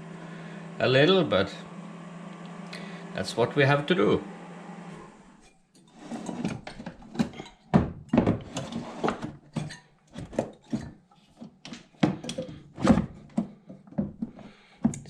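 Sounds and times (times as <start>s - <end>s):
dryer parts knocking and rattling: 6.4s - 15.0s.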